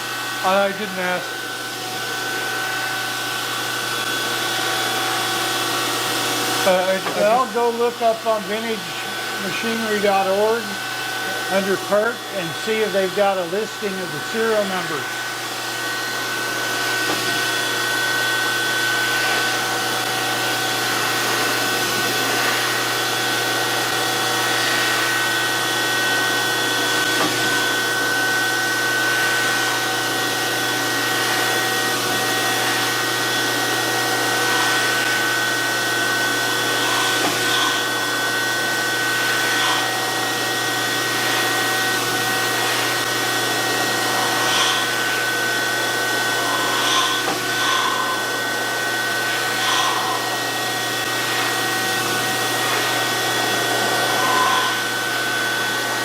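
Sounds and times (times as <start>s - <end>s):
surface grinder whining: 0.0s - 56.0s
grinding wheel scrapes: 6.5s - 22.9s, 33.9s - 56.0s.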